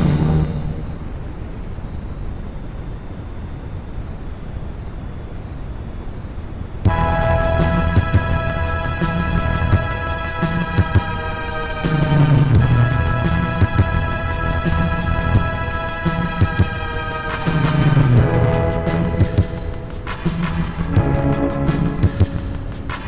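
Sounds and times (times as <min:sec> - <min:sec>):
low synth rumble: 0:00.0 - 0:22.6
fast ticking hi-hat: 0:06.8 - 0:23.0
pitched synth held notes: 0:06.9 - 0:22.9.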